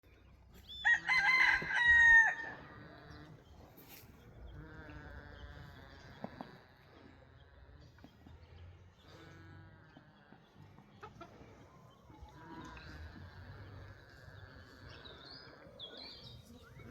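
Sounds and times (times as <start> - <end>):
rooster crowing: 0.8 - 2.6
goat snoring: 2.6 - 10.7, 11.6 - 16.9.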